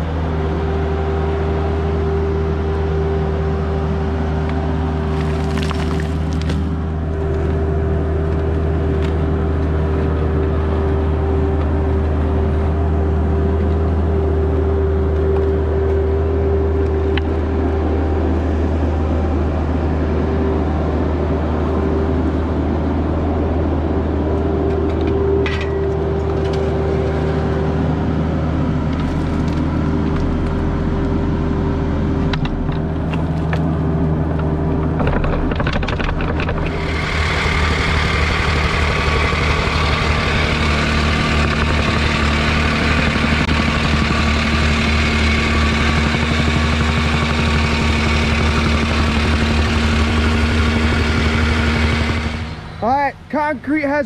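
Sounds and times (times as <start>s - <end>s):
mini excavator engine drone: 0.0s - 54.0s.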